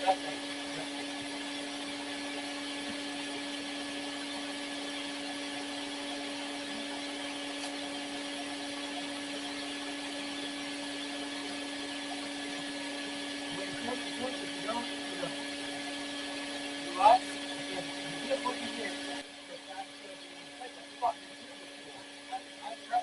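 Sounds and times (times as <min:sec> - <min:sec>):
vacuum motor hum: 0:00.0 - 0:23.0.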